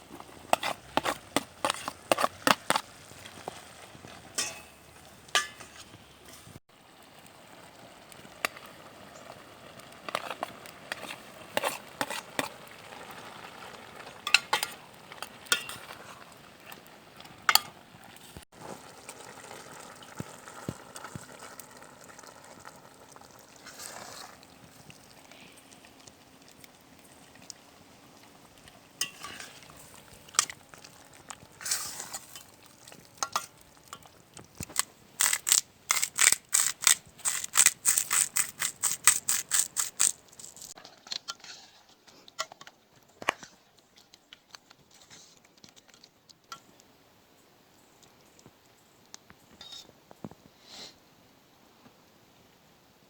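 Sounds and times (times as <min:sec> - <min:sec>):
utensil scraping a pan: 0:00.1 - 0:06.6, 0:10.1 - 0:13.1, 0:29.0 - 0:30.6, 0:31.6 - 0:32.6, 0:34.6 - 0:41.9
food sizzling in a pan: 0:18.1 - 0:25.7, 0:26.8 - 0:40.8.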